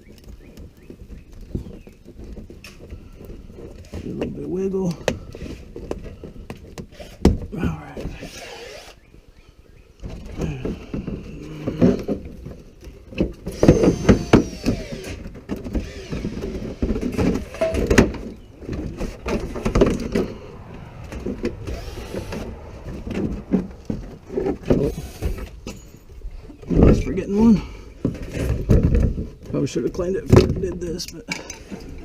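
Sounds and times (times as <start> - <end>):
truck part knocking and rattling: 10.0 - 21.0, 23.1 - 32.0.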